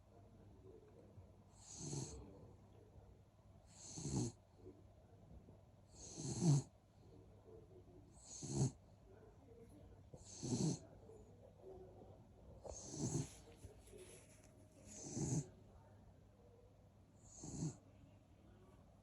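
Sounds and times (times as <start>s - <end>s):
person snoring: 12.7s - 13.4s.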